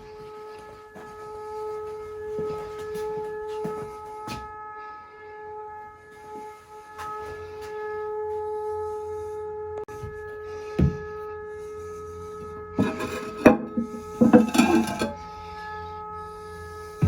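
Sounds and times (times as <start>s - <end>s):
droning tone in plumbing: 0.0s - 17.0s
clatter of bumps: 12.8s - 15.2s.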